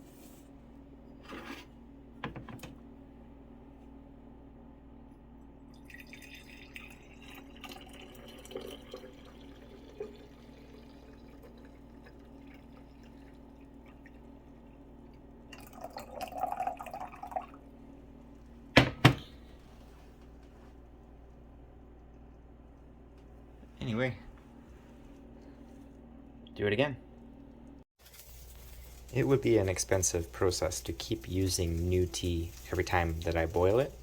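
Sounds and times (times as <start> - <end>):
faint steady hum: 0.0 - 34.0
liquid trickling and dripping: 5.7 - 17.6.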